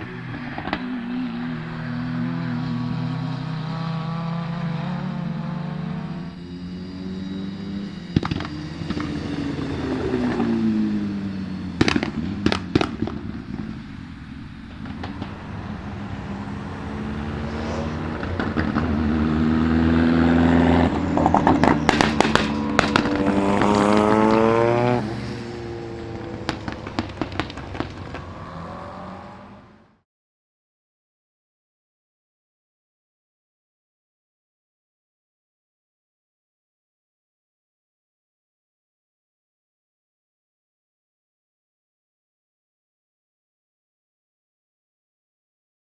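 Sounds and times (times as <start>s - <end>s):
sharp exhaust bangs and pops: 0.0s - 29.5s
rally car engines accelerating: 0.0s - 30.0s.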